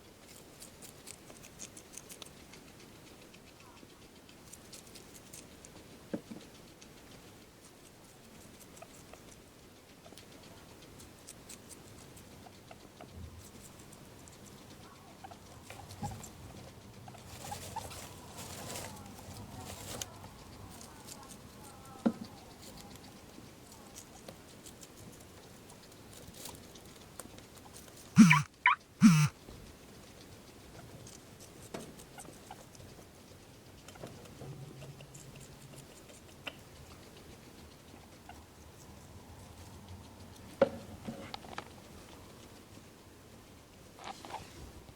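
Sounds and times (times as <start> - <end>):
guinea pig pattering and rustling: 0.0 - 44.9
guinea pig sneezing: 27.6 - 29.4.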